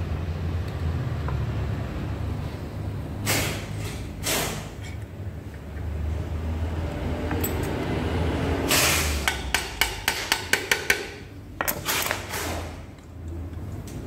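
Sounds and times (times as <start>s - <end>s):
hammer tapping on metal: 9.3s - 11.8s.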